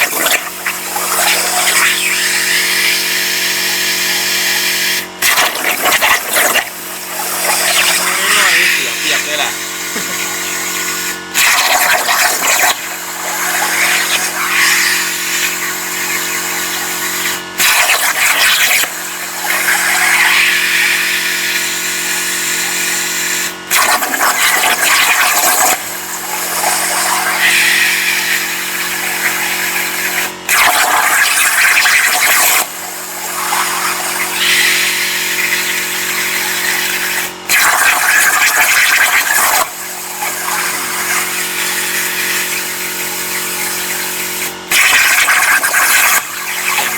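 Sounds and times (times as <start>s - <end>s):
plasma arc hiss and hum: 0.0s - 46.9s
plasma torch firing rush: 5.2s - 17.0s.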